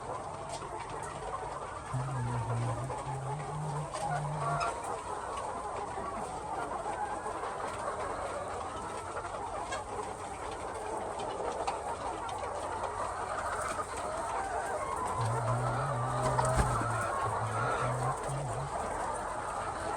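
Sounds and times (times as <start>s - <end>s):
chickens clucking: 0.0s - 19.9s
brief low hum: 1.9s - 4.7s.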